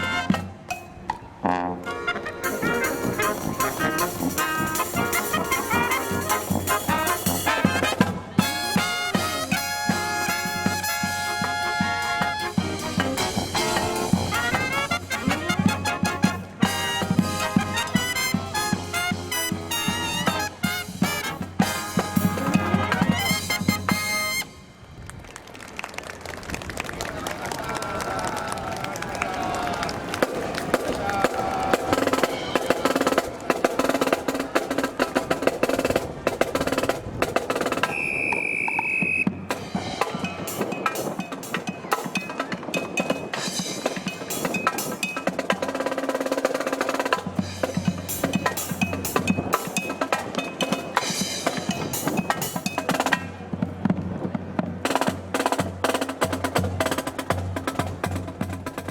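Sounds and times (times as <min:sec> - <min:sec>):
brass tones: 0:00.0 - 0:00.6, 0:01.4 - 0:24.8
marching band drums: 0:00.0 - 0:00.8, 0:01.5 - 0:24.6, 0:30.0 - 0:58.9
wind rumbling on microphone: 0:24.5 - 0:33.8, 0:34.9 - 0:41.8
high whistle tone: 0:37.8 - 0:39.4.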